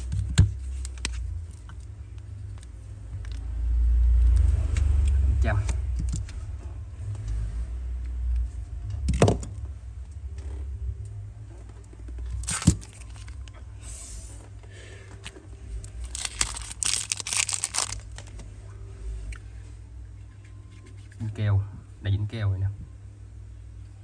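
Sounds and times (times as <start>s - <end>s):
steady low hum: 0.0s - 24.0s
crackly rustling: 15.1s - 18.5s.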